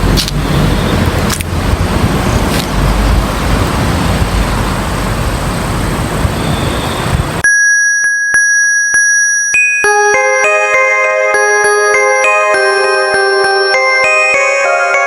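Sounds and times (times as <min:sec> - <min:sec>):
loud low rushing noise: 0:00.0 - 0:07.4
high electronic tone: 0:06.4 - 0:15.0
chime-like music: 0:07.4 - 0:15.0.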